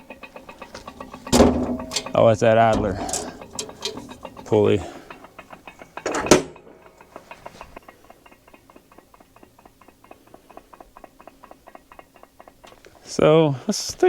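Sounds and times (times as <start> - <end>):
sharp metal clank: 0.0 - 6.7
sawmill pulley ticking: 0.0 - 14.0.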